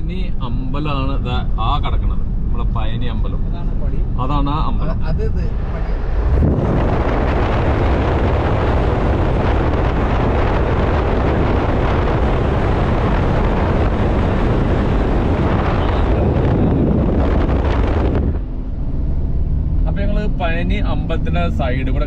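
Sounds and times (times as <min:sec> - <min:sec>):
car road rumble: 0:00.0 - 0:22.0
wind buffeting microphone: 0:05.0 - 0:19.8.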